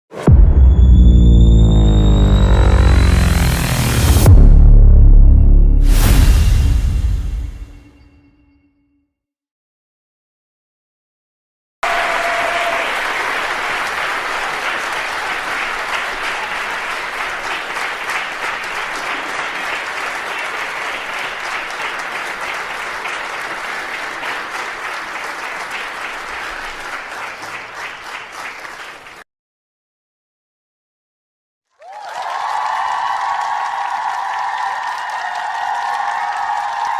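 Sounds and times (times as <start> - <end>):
crowd applauding: 11.8 - 29.2, 31.7 - 36.9.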